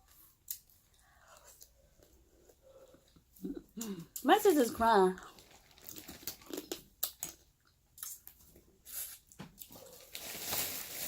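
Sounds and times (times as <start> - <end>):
person chewing wetly: 0.0 - 4.0, 5.3 - 9.8.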